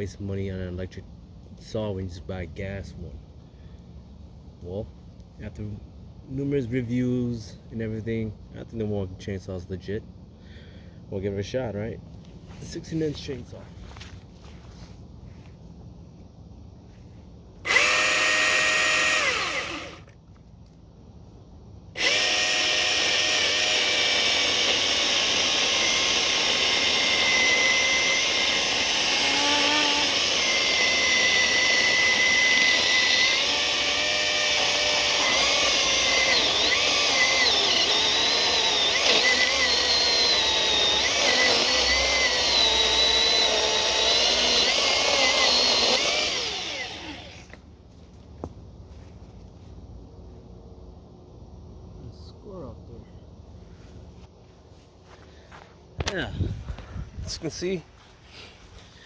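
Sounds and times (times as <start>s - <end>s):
electric chainsaw cutting a log: 17.7s - 20.1s, 22.0s - 47.6s.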